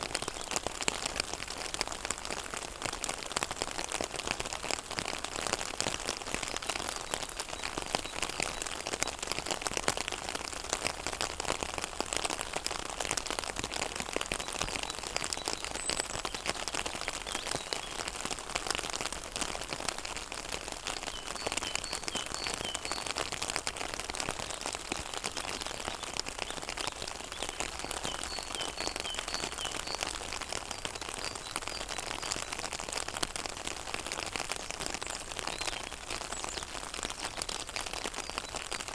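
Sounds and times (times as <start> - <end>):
rain pattering on pond: 0.0 - 38.9.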